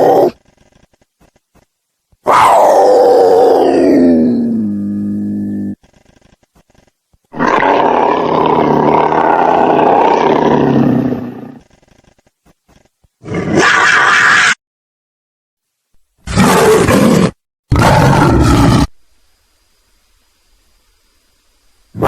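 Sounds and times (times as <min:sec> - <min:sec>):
monster roar: 0:02.3 - 0:05.8, 0:07.3 - 0:11.6, 0:16.3 - 0:18.9.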